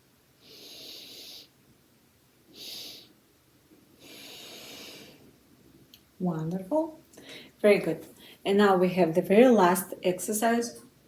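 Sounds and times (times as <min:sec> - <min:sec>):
woman breathing in and out: 0:00.4 - 0:01.6, 0:02.5 - 0:03.2, 0:03.9 - 0:05.4, 0:07.1 - 0:08.4.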